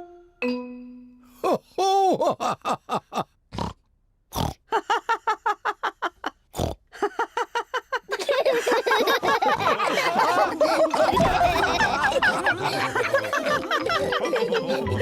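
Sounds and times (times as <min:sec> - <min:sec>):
cartoon pig snorting: 0:03.5 - 0:04.6, 0:06.5 - 0:06.8.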